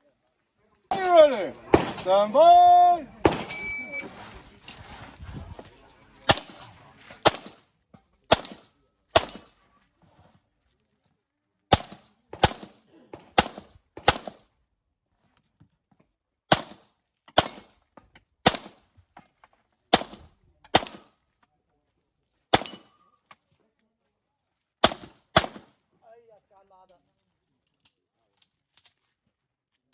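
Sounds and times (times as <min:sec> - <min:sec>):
handgun shots: 0:03.2 - 0:03.7, 0:09.2 - 0:09.5, 0:22.6 - 0:22.9.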